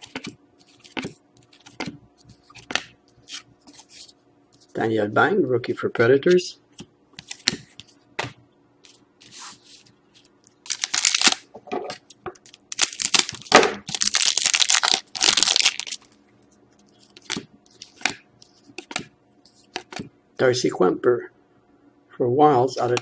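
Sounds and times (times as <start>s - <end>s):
card packaging rustling: 9.2s - 11.4s, 12.5s - 16.2s.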